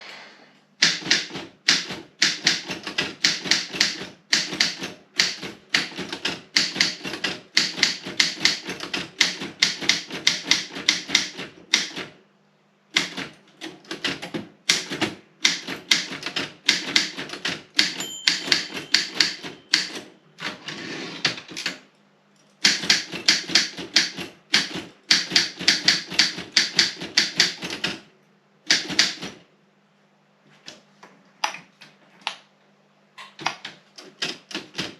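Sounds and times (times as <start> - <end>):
typewriter key strikes: 0.8 - 12.1, 13.0 - 20.1, 22.6 - 28.0, 28.7 - 29.4.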